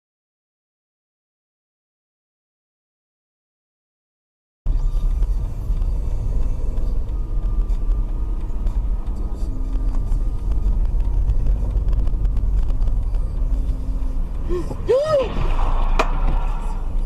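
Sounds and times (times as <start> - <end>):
car driving rumble: 4.7 - 17.0.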